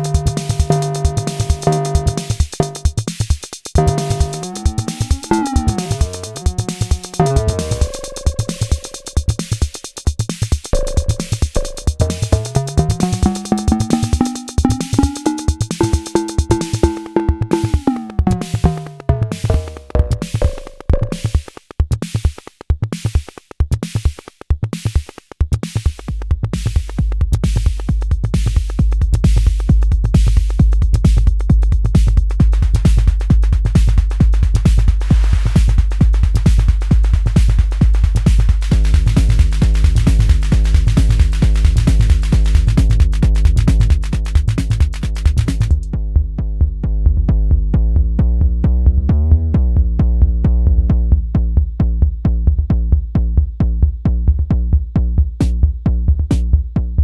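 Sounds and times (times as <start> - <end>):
heavy bass drum pattern: 0.0 - 22.4, 24.0 - 57.0
drum machine beat: 0.0 - 46.4, 51.0 - 57.0
gliding pitched tone: 3.8 - 9.2.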